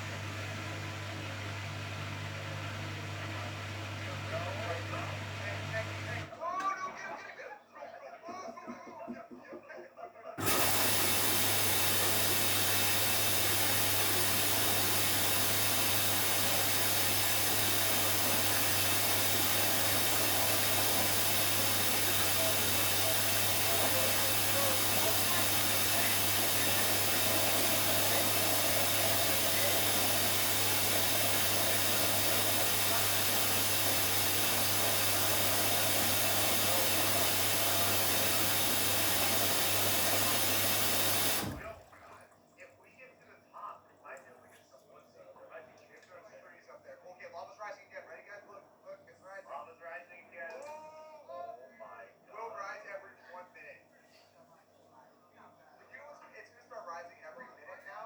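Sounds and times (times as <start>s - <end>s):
water rushing into washing machine: 0.0s - 6.3s, 10.4s - 42.4s.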